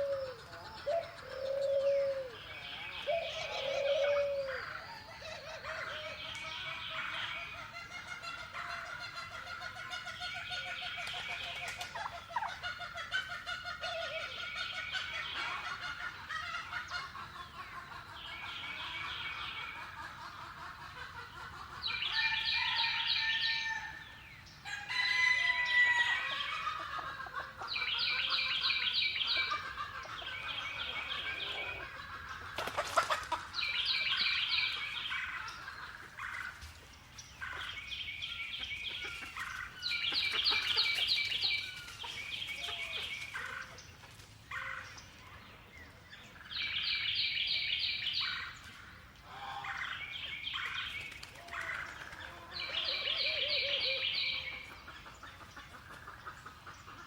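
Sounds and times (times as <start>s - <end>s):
bird calls: 0.0s - 57.0s
hens clucking: 5.5s - 22.5s, 26.1s - 37.8s, 38.5s - 44.2s, 50.6s - 57.0s
poultry rattling calls: 38.5s - 45.1s.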